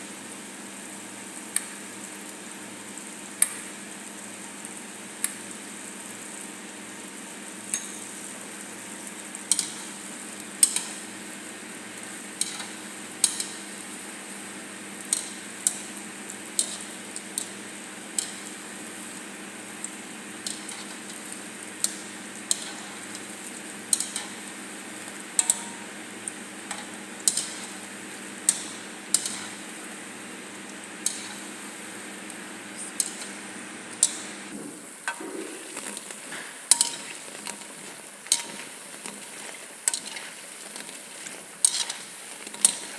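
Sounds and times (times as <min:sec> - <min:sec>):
dough frying in hot oil: 0:00.0 - 0:42.9
utensil clicking against pot: 0:09.5 - 0:09.8, 0:10.6 - 0:10.9, 0:12.4 - 0:13.6, 0:15.0 - 0:15.9, 0:16.6 - 0:17.5, 0:19.8 - 0:23.2, 0:23.9 - 0:24.3, 0:25.4 - 0:27.7, 0:28.5 - 0:29.6, 0:31.0 - 0:31.4, 0:33.0 - 0:34.2, 0:35.1 - 0:40.9, 0:41.6 - 0:42.9.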